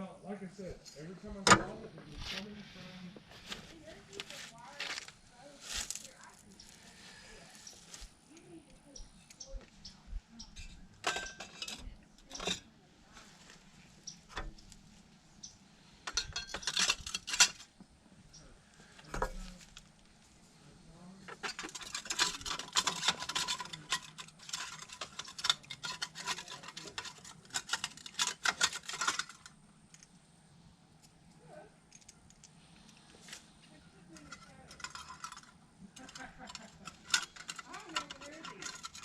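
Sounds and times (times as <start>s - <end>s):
metal parts clinking and rattling: 10.5s - 12.6s, 16.0s - 17.7s, 19.0s - 19.9s, 21.3s - 30.1s, 34.1s - 39.0s.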